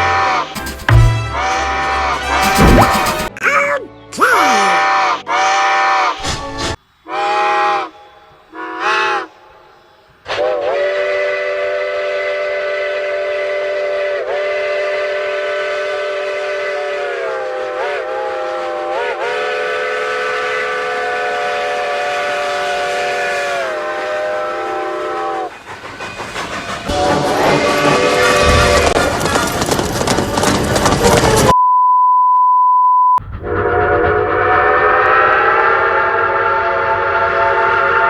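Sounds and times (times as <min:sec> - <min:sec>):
steam locomotive chime whistle: 0:00.0 - 0:03.3, 0:10.3 - 0:25.5, 0:26.9 - 0:29.0, 0:33.4 - 0:38.0.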